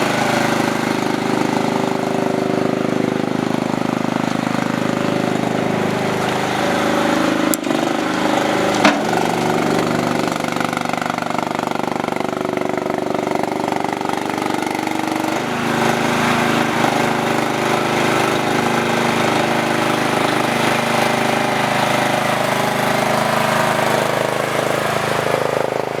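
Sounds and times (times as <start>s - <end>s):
loader engine running: 0.0s - 26.0s
sharp metal clanks: 8.7s - 9.5s.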